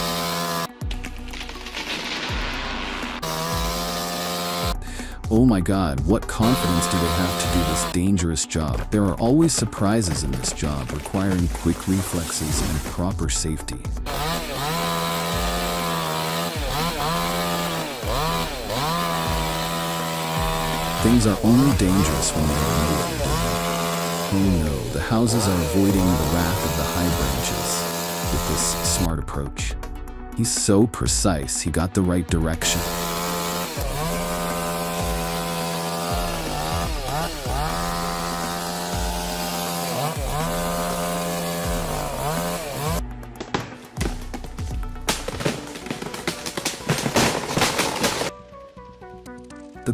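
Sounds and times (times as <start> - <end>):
chainsaw at full throttle: 0.0 - 5.2, 6.4 - 8.0, 10.1 - 13.0, 14.0 - 29.1, 32.5 - 43.0, 45.0 - 48.3.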